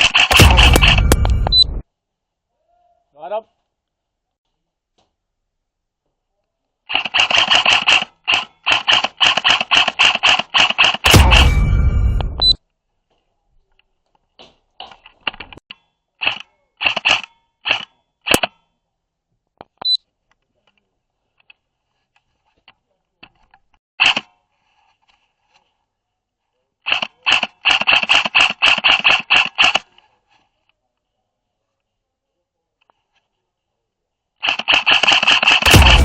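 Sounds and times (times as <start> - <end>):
airsoft guns firing: 0.0 - 1.5, 8.7 - 11.7, 34.7 - 36.0.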